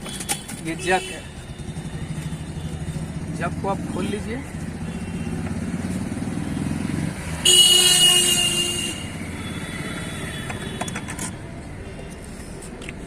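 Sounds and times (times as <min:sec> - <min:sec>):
vehicle horn blaring: 0:07.4 - 0:11.1.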